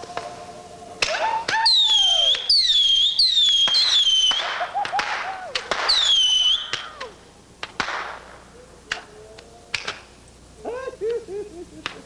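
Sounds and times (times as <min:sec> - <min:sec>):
whistling fireworks: 0:00.0 - 0:10.2
firework pops and cracks: 0:01.0 - 0:10.2, 0:11.8 - 0:12.0.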